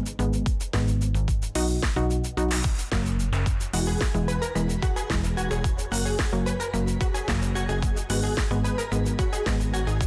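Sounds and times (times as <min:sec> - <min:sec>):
electronic dance music: 0:03.5 - 0:10.0.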